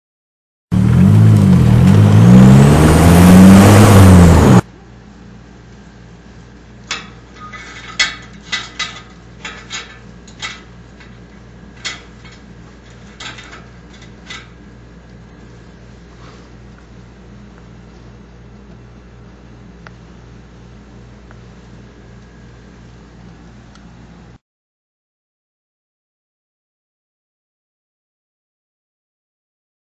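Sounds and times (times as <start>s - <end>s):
car engine revving: 0.7s - 4.6s
low steady hum: 0.8s - 24.4s
scattered clicks and knocks: 6.8s - 14.6s.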